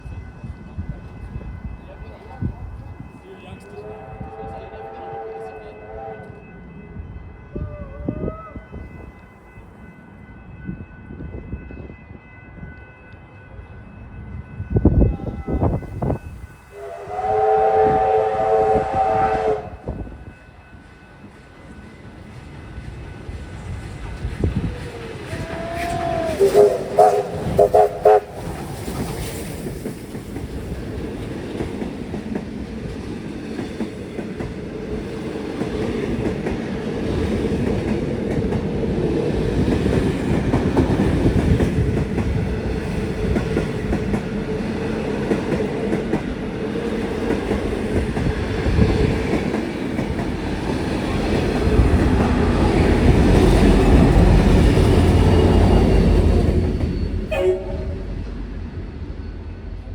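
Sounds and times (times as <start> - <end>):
locomotive horn toots: 3.7 - 6.4, 16.7 - 20.0, 25.4 - 28.5, 57.3 - 58.2
train wheels clattering on rails: 19.8 - 57.4.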